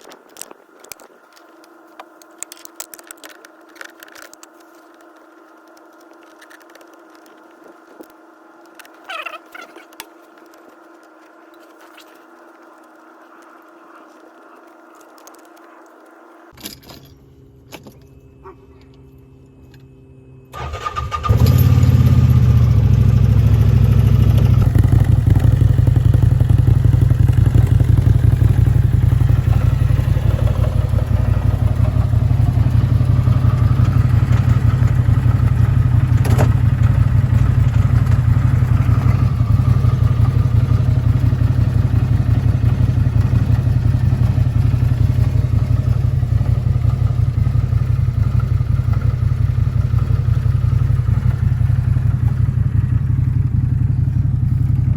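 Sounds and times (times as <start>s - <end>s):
engine starting and running: 20.4s - 54.9s.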